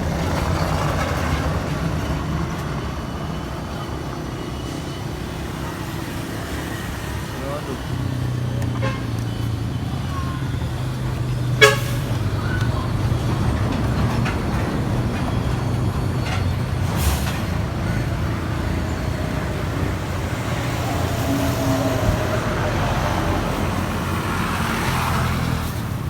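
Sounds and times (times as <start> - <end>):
engine running: 0.0 - 26.0.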